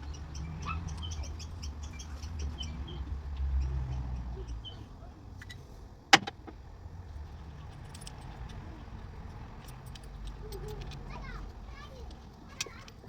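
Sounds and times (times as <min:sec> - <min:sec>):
light clicks and ticks: 0:07.4 - 0:13.0
metal tools clinking: 0:07.5 - 0:11.3.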